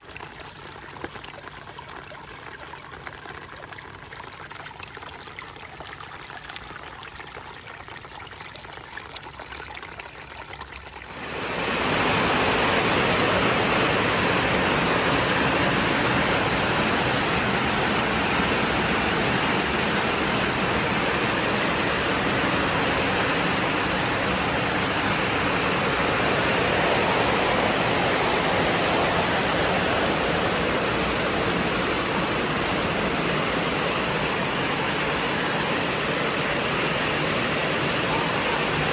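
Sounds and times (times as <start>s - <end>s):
heavy rain: 11.1s - 38.9s.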